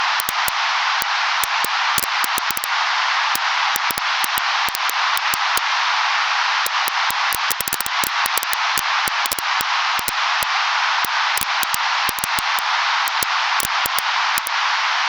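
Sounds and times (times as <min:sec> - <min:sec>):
wood fire crackling: 0:00.0 - 0:00.5, 0:01.4 - 0:02.7, 0:03.8 - 0:05.6, 0:06.7 - 0:10.1.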